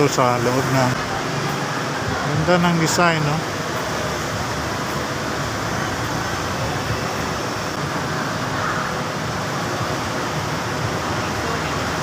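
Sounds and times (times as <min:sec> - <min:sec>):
steady rushing noise: 0:00.0 - 0:12.0.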